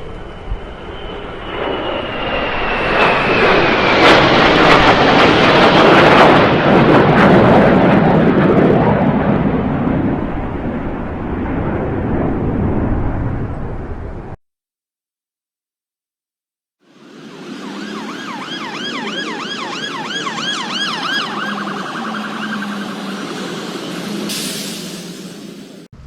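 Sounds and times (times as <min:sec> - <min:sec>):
vehicle engine passing: 0:16.9 - 0:25.9.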